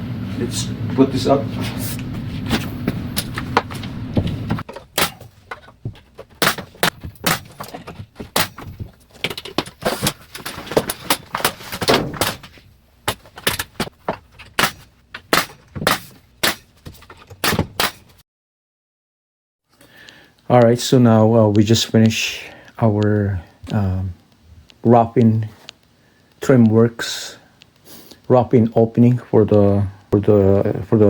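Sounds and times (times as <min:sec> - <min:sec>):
steady low hum: 0:00.0 - 0:16.3
nailing knocks: 0:03.2 - 0:13.9.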